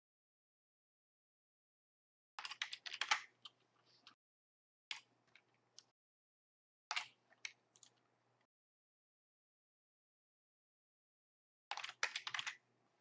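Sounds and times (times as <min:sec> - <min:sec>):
keyboard typing: 0:02.4 - 0:03.6, 0:06.9 - 0:08.0, 0:11.7 - 0:12.6.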